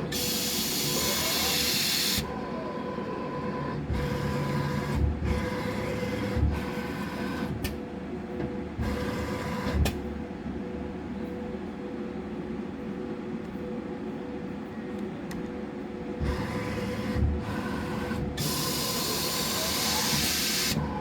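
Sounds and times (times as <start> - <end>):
milling machine whine: 16.1 - 21.0.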